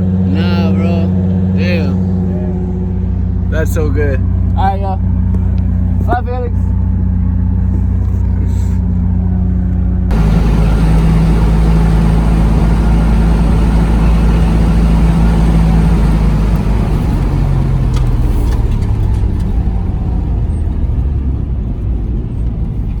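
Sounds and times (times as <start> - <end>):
car engine running: 0.0 - 23.0.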